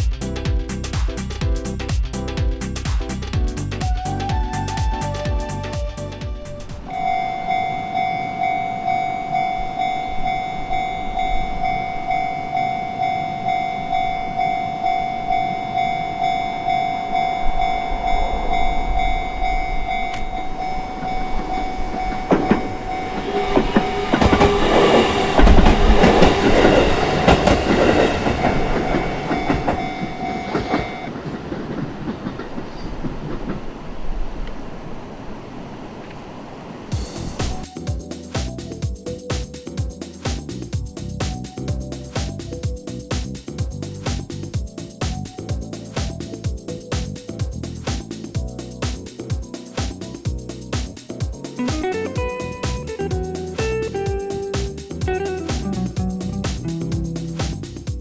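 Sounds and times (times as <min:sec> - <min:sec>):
level-crossing alarm chime: 0:06.9 - 0:31.1
train wheels clattering over rails: 0:21.8 - 0:34.1.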